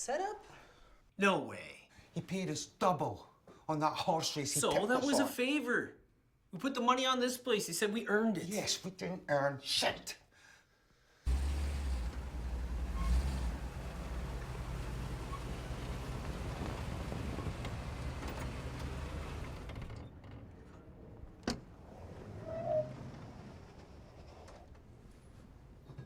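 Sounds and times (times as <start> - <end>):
vehicle engine rumble: 11.3 - 25.9.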